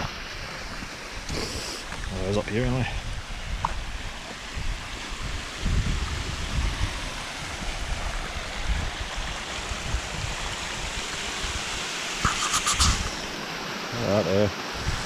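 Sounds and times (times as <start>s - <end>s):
stream running water: 0.0s - 15.0s
wind buffeting microphone: 1.9s - 11.8s.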